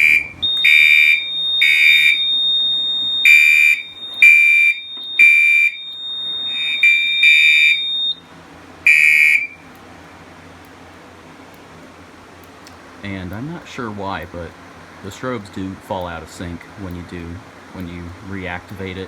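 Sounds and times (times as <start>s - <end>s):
steady high-pitched beep: 0.0s - 8.2s
fire alarm horn blasts: 0.0s - 9.7s.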